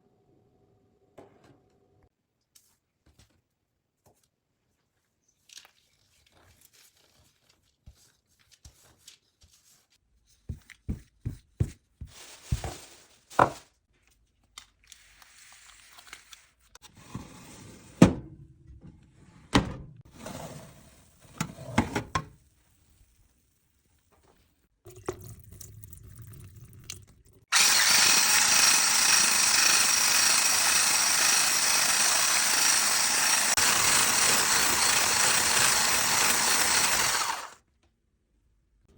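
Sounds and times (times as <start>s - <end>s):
kitchen appliance motor running: 27.5s - 37.6s.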